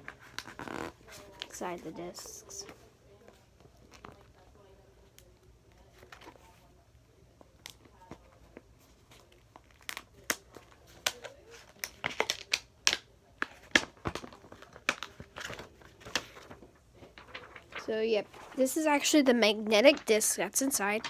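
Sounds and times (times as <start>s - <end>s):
plastic crinkling and snapping: 9.2s - 17.9s, 19.9s - 21.0s.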